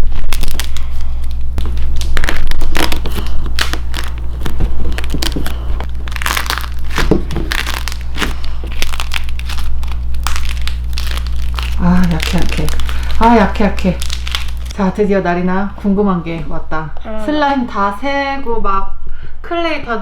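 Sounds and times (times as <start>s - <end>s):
foam clay crackling when crushed: 0.0s - 16.0s.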